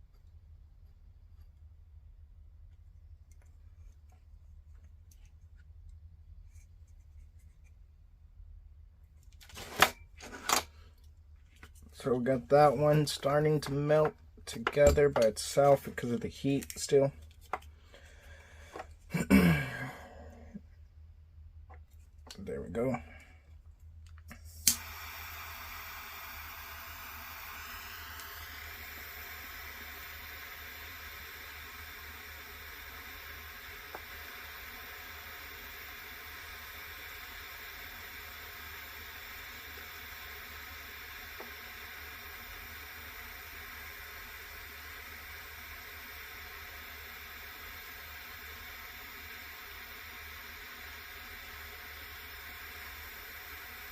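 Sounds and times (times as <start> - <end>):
heat gun fan hissing: 11.6 - 20.6, 22.1 - 23.4, 24.2 - 53.9
heat gun switch click: 24.6 - 24.9.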